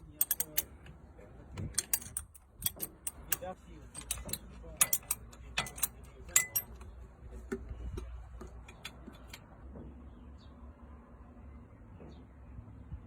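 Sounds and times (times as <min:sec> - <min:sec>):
metallic clinks of tools: 0:00.0 - 0:00.8, 0:01.6 - 0:06.9.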